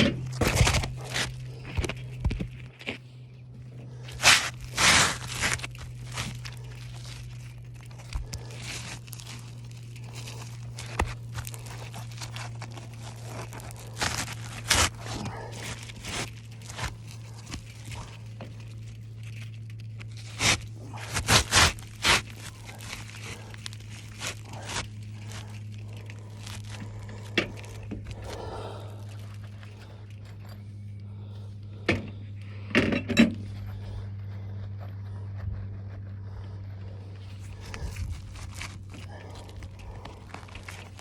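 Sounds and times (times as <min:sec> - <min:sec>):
scrapes and knocks on roof shingles: 0:00.0 - 0:29.5
low hum: 0:00.0 - 0:41.0.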